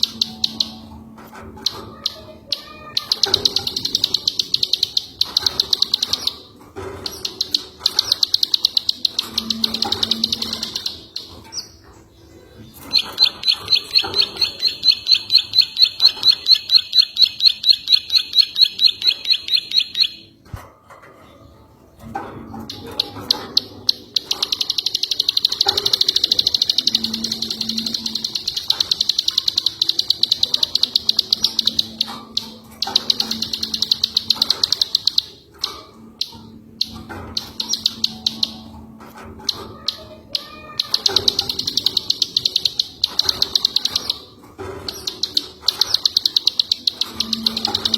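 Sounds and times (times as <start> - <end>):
songbird singing rapid high notes: 12.6 - 20.3.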